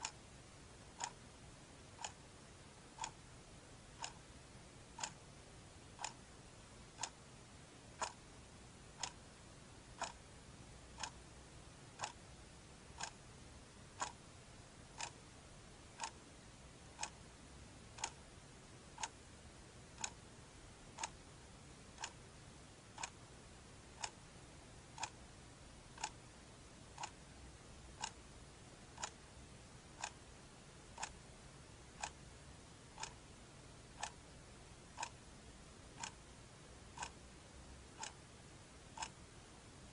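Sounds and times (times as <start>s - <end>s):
clock ticking: 0.0s - 0.2s, 0.9s - 1.2s, 1.9s - 3.2s, 3.9s - 5.2s, 6.0s - 6.3s, 6.9s - 7.2s, 7.9s - 8.2s, 8.9s - 9.3s, 10.0s - 10.3s, 11.0s - 11.2s, 11.9s - 12.2s, 12.9s - 13.2s, 13.9s - 14.2s, 15.0s - 15.2s, 15.9s - 16.2s, 16.9s - 17.3s, 17.9s - 18.3s, 18.9s - 19.2s, 19.9s - 20.3s, 20.9s - 21.3s, 21.9s - 22.2s, 23.0s - 23.3s, 23.9s - 24.2s, 24.9s - 25.2s, 25.9s - 26.3s, 26.9s - 27.2s, 27.9s - 28.2s, 28.9s - 29.3s, 29.9s - 30.3s, 30.9s - 31.3s, 31.9s - 32.2s, 32.9s - 33.2s, 33.9s - 34.3s, 34.9s - 35.3s, 36.0s - 36.3s, 36.9s - 38.3s, 38.9s - 39.2s
faint steady hiss: 0.0s - 39.9s.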